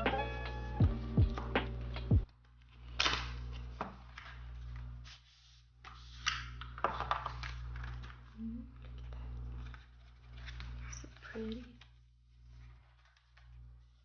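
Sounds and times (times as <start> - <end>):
cardboard packaging rustling: 2.3 - 14.0.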